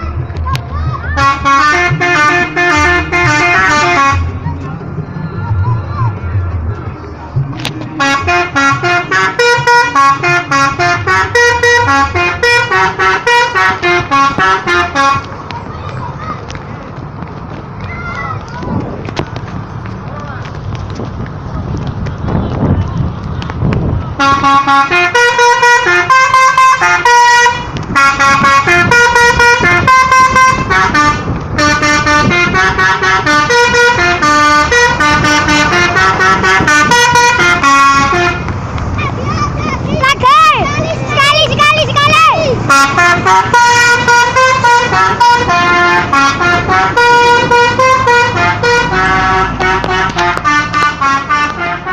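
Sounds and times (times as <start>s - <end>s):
musical air horn playing tune: 1.2s - 4.4s, 8.0s - 15.3s, 24.2s - 38.5s, 42.6s - 51.9s.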